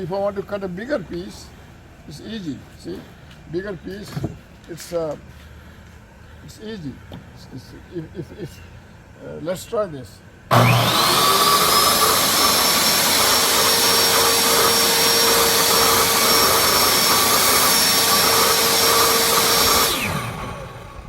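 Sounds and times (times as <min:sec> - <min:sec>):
table saw motor whine: 0:10.5 - 0:21.0.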